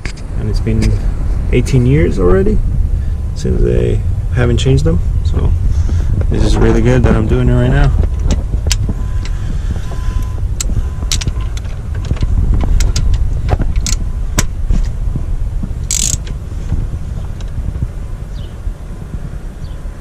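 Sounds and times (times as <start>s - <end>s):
steady low rumble: 0.0s - 20.0s
metallic clicks of hand tools: 15.9s - 16.4s.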